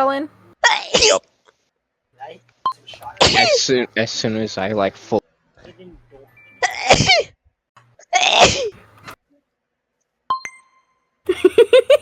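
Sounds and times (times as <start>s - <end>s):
person sneezing: 8.1s - 8.7s.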